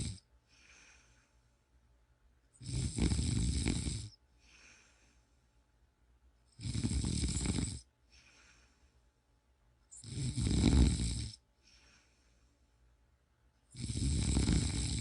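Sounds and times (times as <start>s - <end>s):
loud snores: 0.0s - 0.3s, 2.6s - 4.2s, 6.6s - 7.9s, 9.9s - 11.4s, 13.7s - 15.0s
soft breath: 0.3s - 1.9s, 4.1s - 5.8s, 7.8s - 9.4s, 11.4s - 13.1s.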